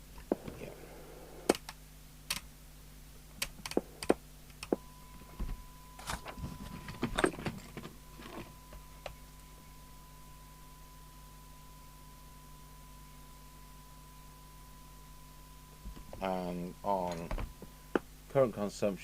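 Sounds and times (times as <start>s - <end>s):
low mains hum: 0.0s - 19.0s
steady pure tone: 0.0s - 19.0s
switches and knobs clicking: 1.5s - 2.5s, 3.3s - 9.5s.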